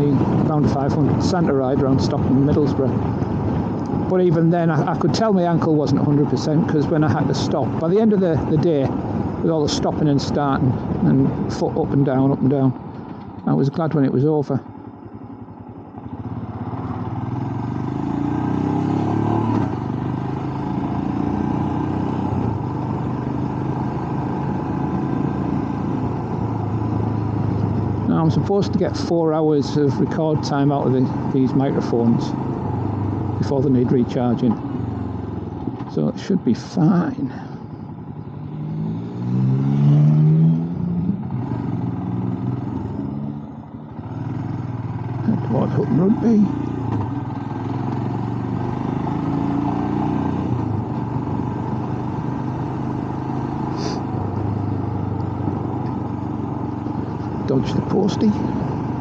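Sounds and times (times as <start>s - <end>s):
motorcycle engine revving: 15.4s - 36.1s, 36.8s - 59.0s.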